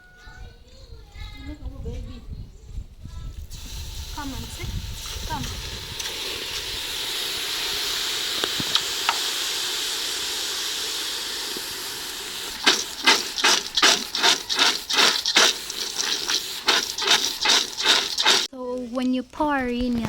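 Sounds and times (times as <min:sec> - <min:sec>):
water hissing in hot pan: 0:03.5 - 0:18.5
peanuts stirred with scraping: 0:11.4 - 0:18.5.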